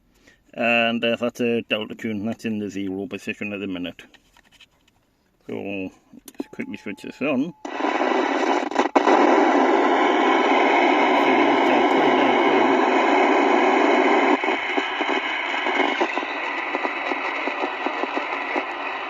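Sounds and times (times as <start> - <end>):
radio static hiss: 5.5 - 19.0
radio click: 7.6 - 19.0.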